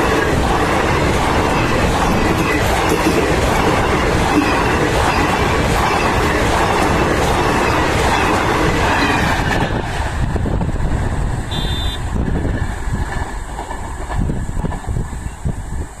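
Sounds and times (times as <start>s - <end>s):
express train rushing past: 0.0s - 16.0s
wind on microphone: 0.0s - 16.0s
short high beep: 11.5s - 12.0s.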